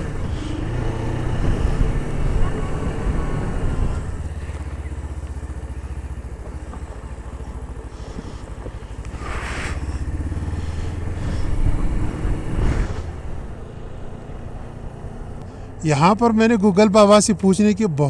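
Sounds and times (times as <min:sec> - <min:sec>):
motorcycle engine running: 0:00.0 - 0:18.0
brief rushing noise: 0:09.1 - 0:13.6.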